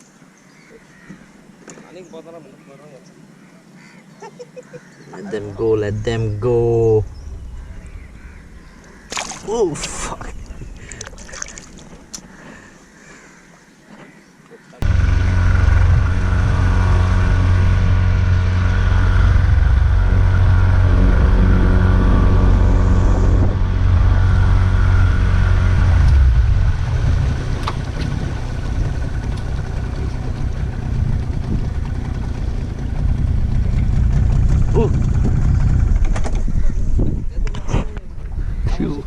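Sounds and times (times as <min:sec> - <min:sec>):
boat engine running: 0:14.8 - 0:37.4.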